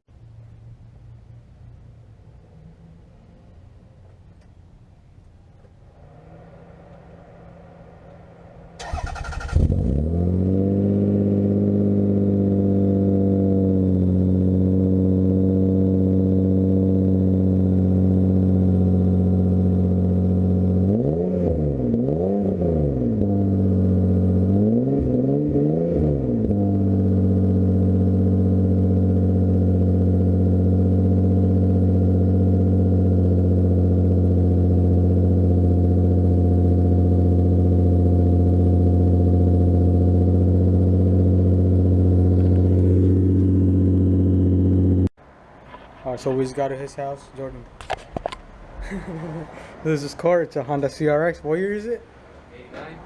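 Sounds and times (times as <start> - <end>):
car engine idling: 0.1 - 20.8, 27.2 - 45.1
engine revving blips: 8.1 - 45.2
car engine cranking: 8.8 - 10.6.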